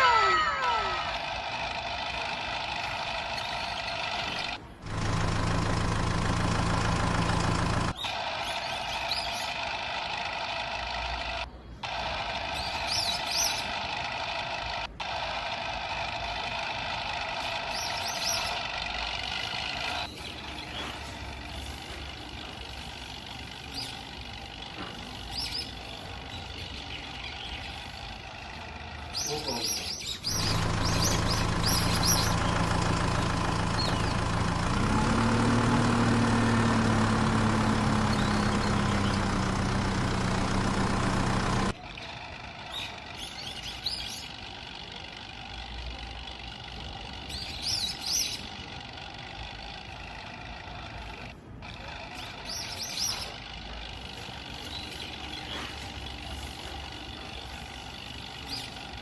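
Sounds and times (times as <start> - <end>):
engine-like tonal sound: 0.0 - 59.0.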